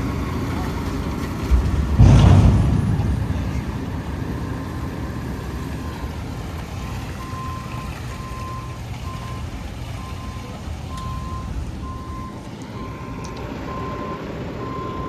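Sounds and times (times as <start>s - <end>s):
diesel truck engine running: 0.0s - 15.0s
loud deep burst of noise: 1.3s - 7.5s.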